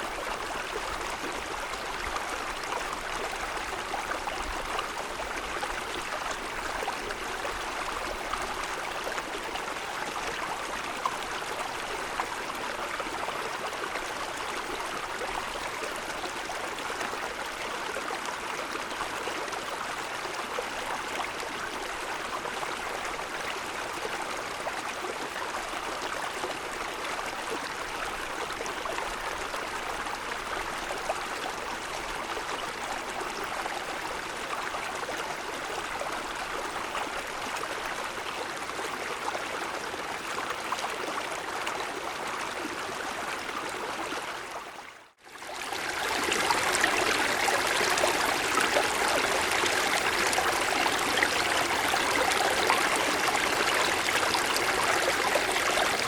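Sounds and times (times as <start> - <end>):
stream babbling over stones: 45.3 - 56.0.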